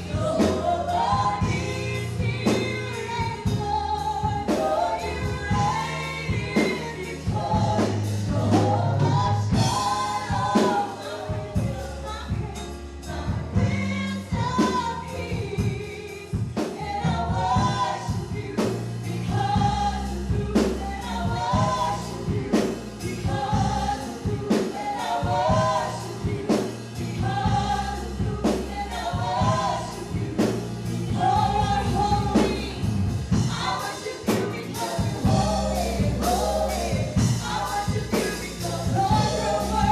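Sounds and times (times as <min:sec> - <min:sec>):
band playing: 0:00.0 - 0:39.9
bass notes: 0:00.0 - 0:39.9
group singing gospel: 0:00.0 - 0:39.9
drum beat: 0:16.4 - 0:18.6.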